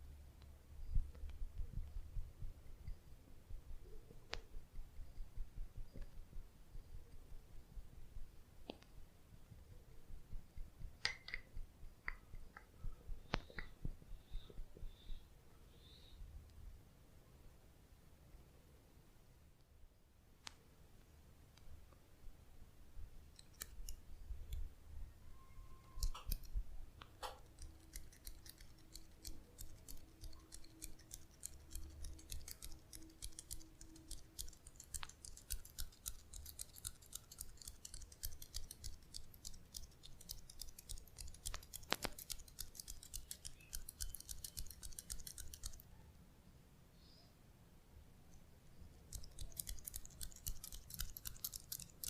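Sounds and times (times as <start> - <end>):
rapid crisp clicks: 23.3 - 24.7, 26.0 - 45.8, 49.0 - 52.0.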